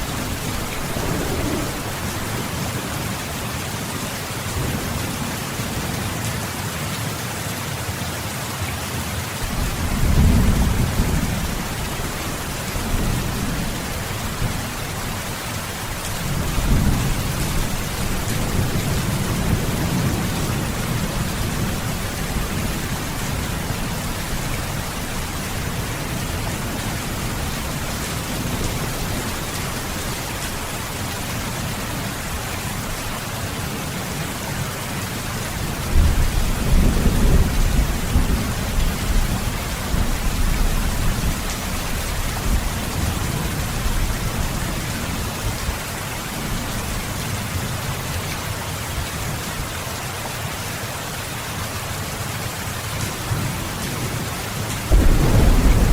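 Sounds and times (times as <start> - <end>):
thunder rumbling: 0.0 - 3.4, 9.5 - 14.7, 54.9 - 55.9
heavy rain: 0.0 - 55.9.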